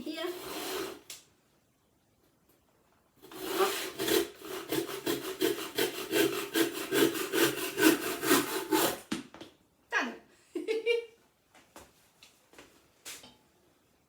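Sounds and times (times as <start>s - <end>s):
handsaw sawing through wood: 0.1s - 1.0s, 3.2s - 9.1s.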